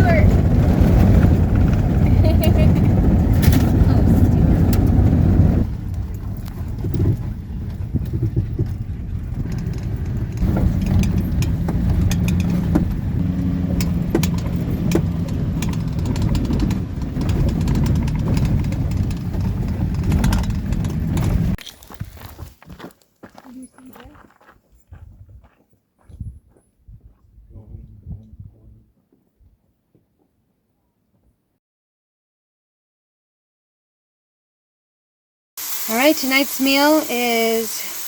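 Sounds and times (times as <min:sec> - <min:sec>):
van engine and road rumble: 0:00.0 - 0:22.8, 0:23.4 - 0:28.8.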